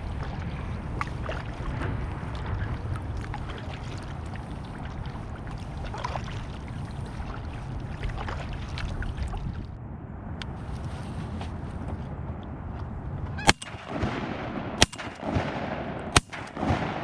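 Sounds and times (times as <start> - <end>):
water splashing around kayak: 0.0 - 9.8
wind rumble on microphone: 0.0 - 17.0.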